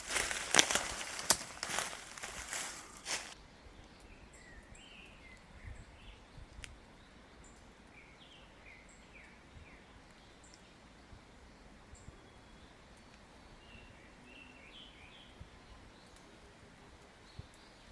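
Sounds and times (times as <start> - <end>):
twigs rustling and crackling: 0.0 - 3.4.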